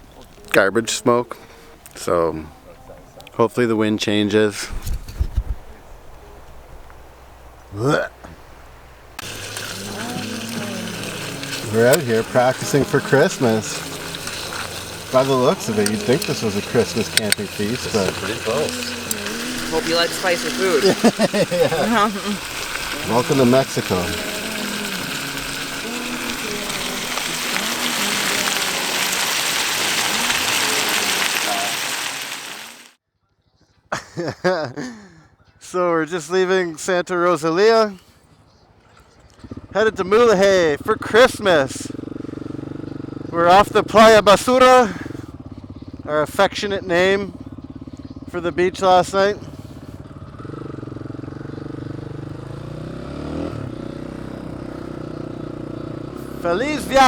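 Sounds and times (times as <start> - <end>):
faint voices: 9.2 - 31.9
dirt bike engine running: 9.2 - 32.9, 39.1 - 57.0
food sizzling in a hot pan: 9.2 - 33.0.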